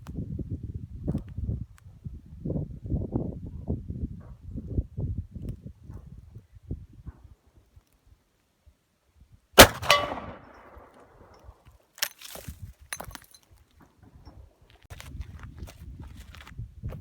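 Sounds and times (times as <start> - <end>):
rifle shot with metallic ring: 9.6 - 11.0.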